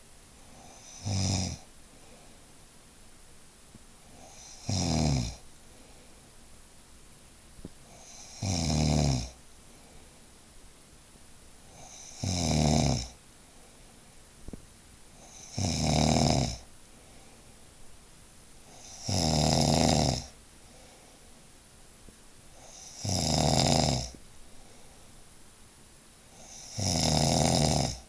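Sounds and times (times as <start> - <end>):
quiet breathing: 0.0 - 2.8, 3.7 - 6.8, 7.6 - 10.6, 11.4 - 28.0
man snoring: 0.6 - 1.7, 4.2 - 5.4, 7.9 - 9.4, 11.7 - 13.2, 15.2 - 16.6, 18.7 - 20.3, 22.6 - 24.2, 26.4 - 28.0.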